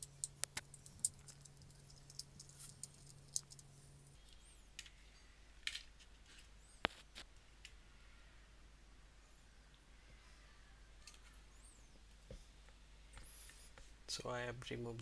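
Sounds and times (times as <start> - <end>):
sharp plastic clicks: 0.0 - 4.2.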